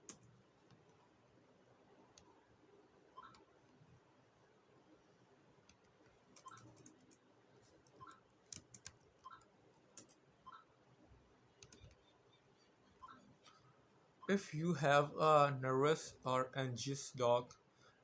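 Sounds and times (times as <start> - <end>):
faint irregular clicks: 0.0 - 1.1, 2.1 - 2.4, 5.5 - 13.9.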